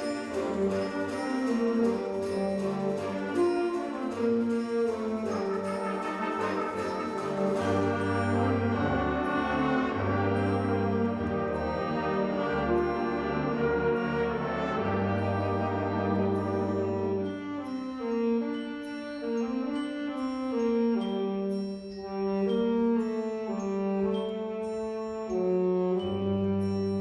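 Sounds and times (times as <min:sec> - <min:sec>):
high percussion tapping: 0:00.0 - 0:08.8
low brass notes: 0:00.0 - 0:17.7
wind ensemble playing: 0:00.0 - 0:27.0.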